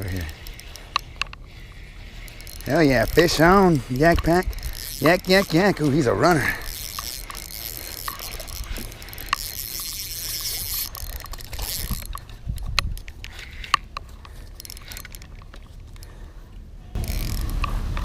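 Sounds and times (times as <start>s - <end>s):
sharp clicks and ticks: 2.2s - 16.1s.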